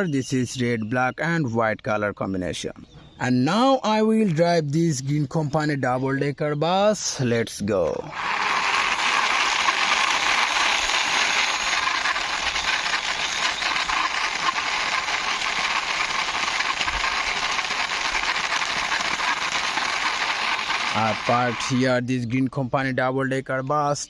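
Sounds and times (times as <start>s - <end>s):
toy bus wheels rattling: 8.1s - 21.8s.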